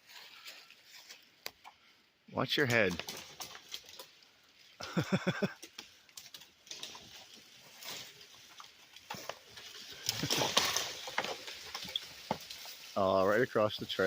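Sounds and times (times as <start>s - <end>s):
wood cracking and snapping: 2.7s - 4.2s, 4.8s - 12.9s
tree crashing down: 9.0s - 13.0s.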